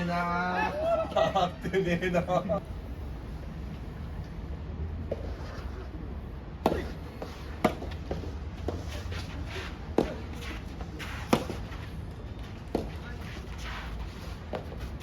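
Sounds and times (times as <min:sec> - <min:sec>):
racket striking tennis ball: 0:06.6 - 0:09.3, 0:09.9 - 0:11.7.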